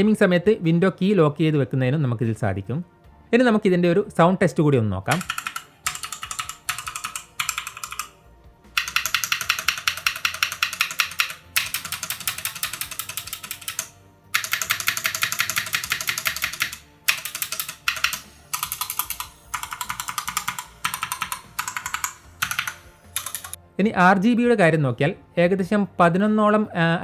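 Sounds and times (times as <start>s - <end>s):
mechanical keyboard typing: 5.1s - 8.2s, 8.8s - 23.6s.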